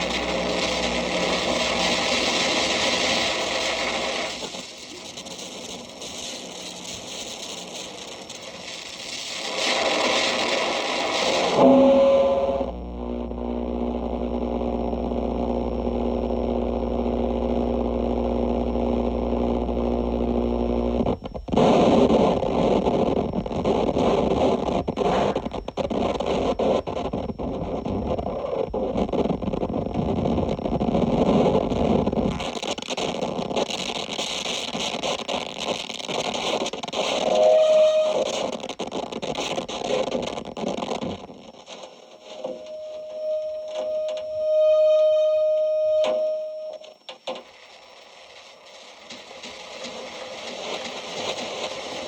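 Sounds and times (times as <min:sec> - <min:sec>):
harsh hissing noise: 0:00.0 - 0:52.0
stuttering crackle and distortion: 0:00.0 - 0:52.0
droning chord over low hum: 0:11.3 - 0:21.4, 0:42.2 - 0:47.0.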